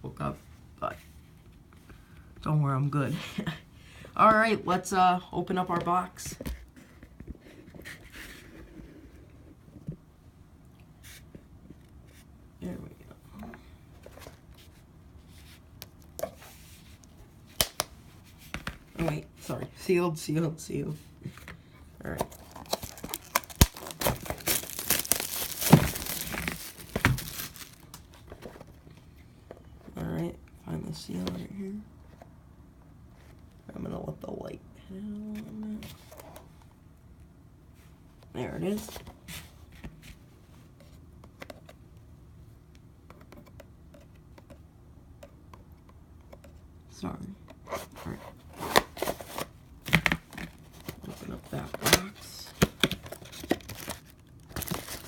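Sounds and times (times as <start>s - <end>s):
low room hum: 0.0s - 55.0s
plastic packaging crinkling: 22.0s - 28.2s, 52.1s - 55.0s.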